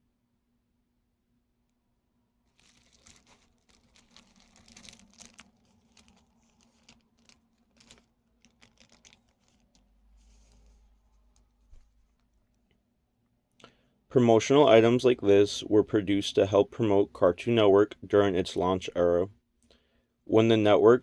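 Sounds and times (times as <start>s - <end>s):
packaging crinkling: 2.5s - 12.5s.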